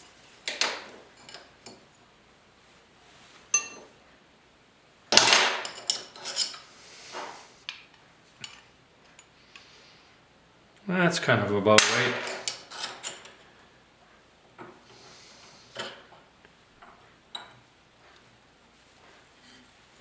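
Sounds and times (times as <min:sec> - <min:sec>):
metal bracket and tools clanking: 0:11.8 - 0:13.4.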